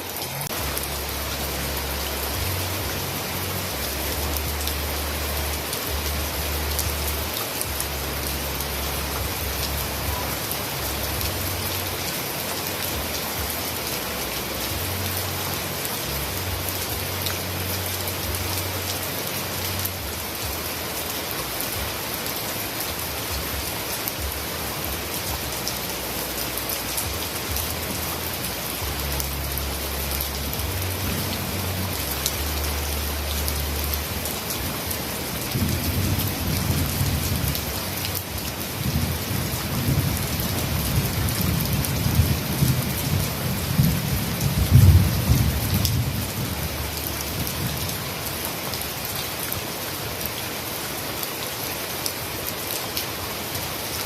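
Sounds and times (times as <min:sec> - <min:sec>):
heavy rain falling: 0:00.0 - 0:54.0
thunder rumbling: 0:38.8 - 0:47.8.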